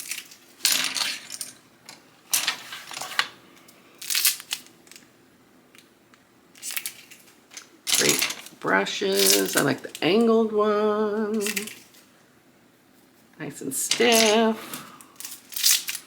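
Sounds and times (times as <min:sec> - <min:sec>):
packaging rustling and clicking: 0:06.6 - 0:08.6.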